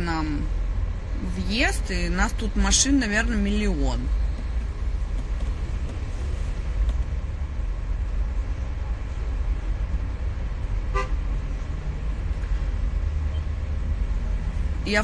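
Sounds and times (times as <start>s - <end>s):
car cabin rumble: 3.1s - 9.0s
car horn beep: 10.9s - 11.2s.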